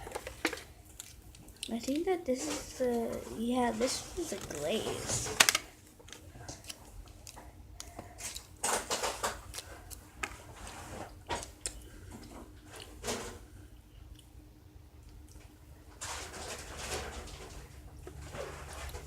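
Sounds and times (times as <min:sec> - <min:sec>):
snack packaging rustling: 0:00.0 - 0:13.0
low room hum: 0:00.0 - 0:19.0.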